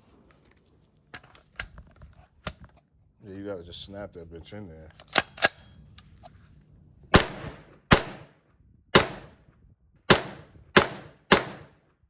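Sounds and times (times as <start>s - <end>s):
gunshots with echo: 7.1s - 8.4s, 9.0s - 9.4s, 10.1s - 11.8s.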